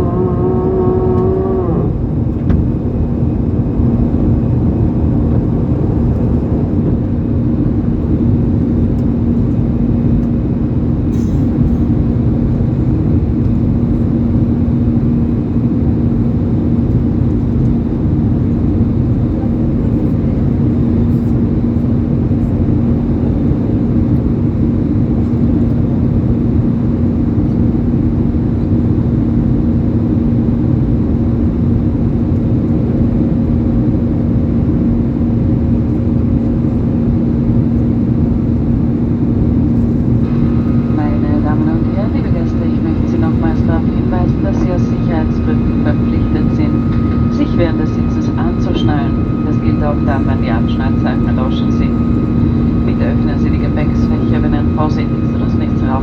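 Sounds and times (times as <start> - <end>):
low hum: 0.0 - 20.4, 32.9 - 56.0
airplane cabin engine rumble: 0.0 - 56.0.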